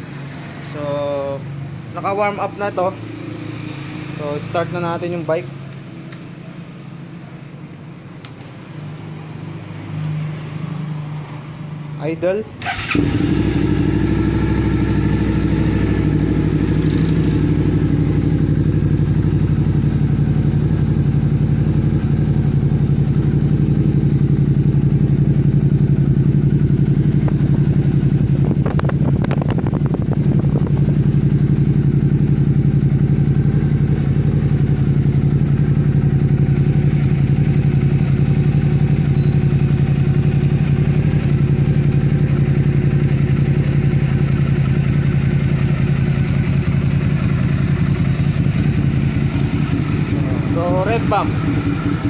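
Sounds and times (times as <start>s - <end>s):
motorcycle engine idling: 12.6s - 52.0s.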